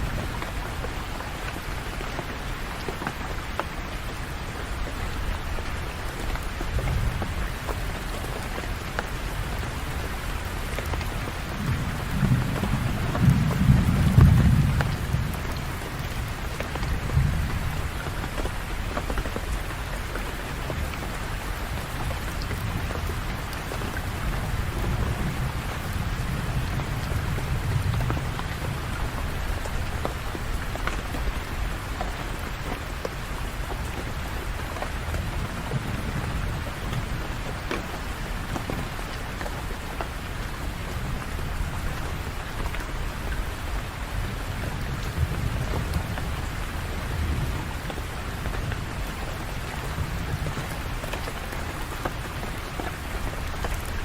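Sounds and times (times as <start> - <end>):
individual raindrops: 0.0 - 54.0
rain on hard surfaces: 0.0 - 54.0
distant thunder rumbling: 10.9 - 18.8.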